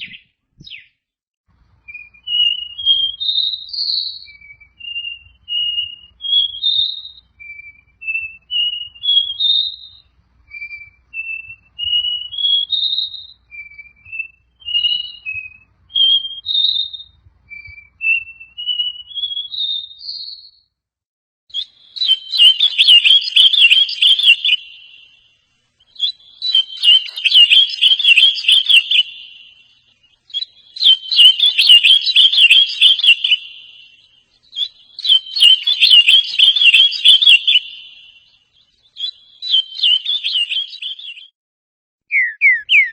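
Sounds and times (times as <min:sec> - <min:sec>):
songbird whistled notes: 0:00.0 - 0:00.9, 0:01.8 - 0:20.7, 0:21.5 - 0:41.3, 0:42.1 - 0:42.9
songbird buzzy warbling: 0:25.9 - 0:29.4, 0:42.1 - 0:42.9.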